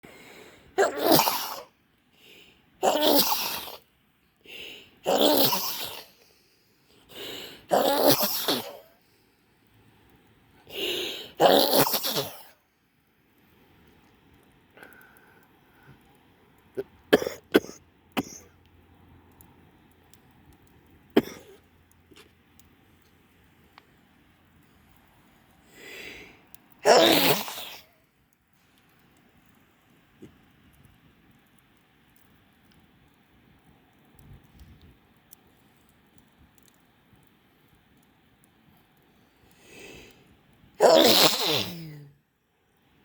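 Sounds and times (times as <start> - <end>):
person sneezing: 0.8 - 1.7, 2.8 - 3.8, 5.1 - 6.2, 7.7 - 8.9, 10.8 - 12.5, 26.8 - 27.9, 40.8 - 42.1.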